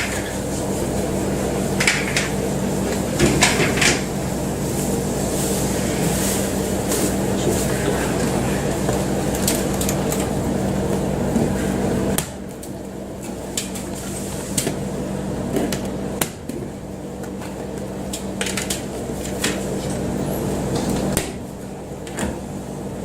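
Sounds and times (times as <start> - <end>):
machine hum: 0.0 - 23.0.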